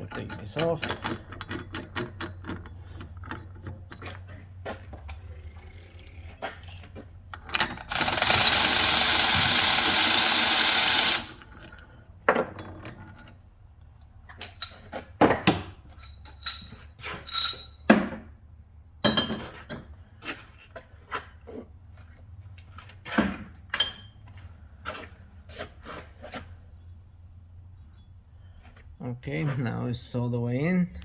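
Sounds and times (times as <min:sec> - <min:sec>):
hand tools clinking on metal: 0:00.0 - 0:04.4
power tool running: 0:07.9 - 0:11.4.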